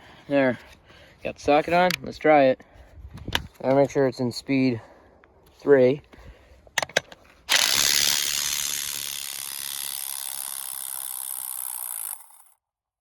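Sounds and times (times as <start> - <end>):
impact wrench hammering: 6.8 - 12.5.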